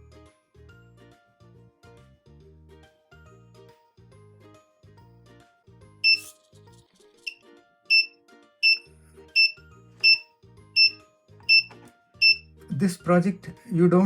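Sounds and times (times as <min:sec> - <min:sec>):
light background music: 0:00.0 - 0:14.0
short high electronic beeps: 0:06.0 - 0:06.3, 0:07.9 - 0:08.8, 0:09.4 - 0:10.2, 0:10.8 - 0:12.4.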